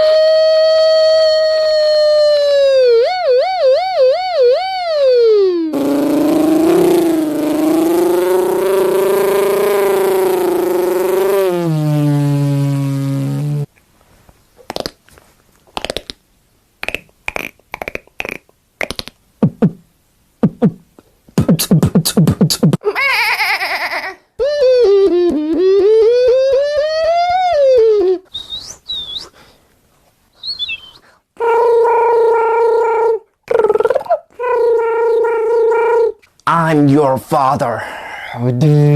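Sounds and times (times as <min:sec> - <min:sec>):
mouth-made buzzy drone: 0:00.0 - 0:13.7
man making mouth sound effects: 0:05.2 - 0:13.7, 0:14.6 - 0:15.0, 0:15.7 - 0:16.2, 0:16.8 - 0:22.9, 0:24.4 - 0:29.4, 0:30.4 - 0:37.1
whistled bird-like chirps: 0:28.3 - 0:29.4, 0:30.4 - 0:31.1.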